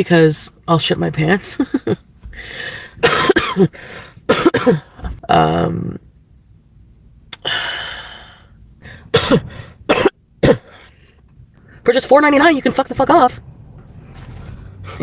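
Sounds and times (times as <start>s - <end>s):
long noisy breath: 2.4s - 3.0s, 7.4s - 9.8s
woman coughing: 3.0s - 3.7s, 4.3s - 5.0s, 9.1s - 10.9s.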